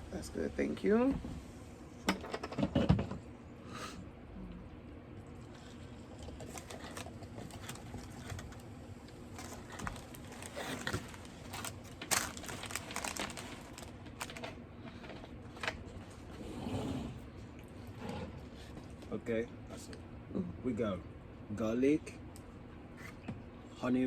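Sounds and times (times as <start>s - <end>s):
food packaging crinkling: 5.6s - 14.6s.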